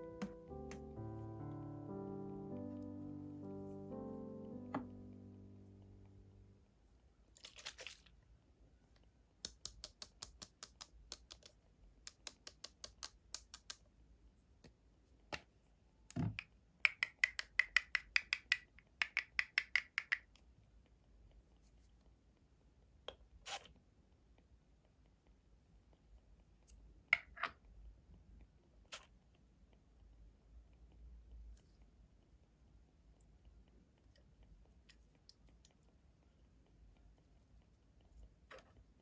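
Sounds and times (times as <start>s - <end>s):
quick small clicks and taps: 9.4s - 13.9s, 16.1s - 20.4s.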